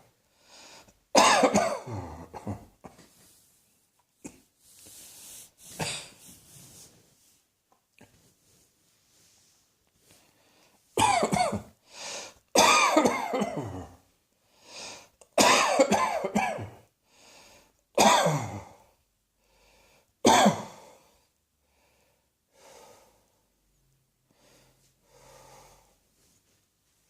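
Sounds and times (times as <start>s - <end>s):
quiet breaths drawn in: 0.0s - 1.1s, 2.9s - 11.0s, 11.7s - 12.5s, 13.9s - 15.2s, 16.8s - 17.9s, 18.6s - 27.0s
person coughing: 1.2s - 3.2s, 5.7s - 6.2s, 11.0s - 11.8s, 12.6s - 14.0s, 15.4s - 16.8s, 18.0s - 18.8s, 20.3s - 20.8s.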